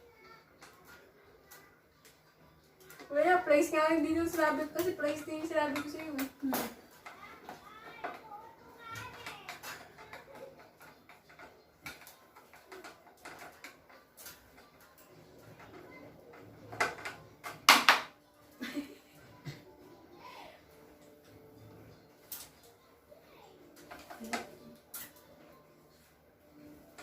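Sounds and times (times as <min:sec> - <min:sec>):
fan parts clicking and knocking: 0:00.2 - 0:19.9, 0:23.6 - 0:27.0.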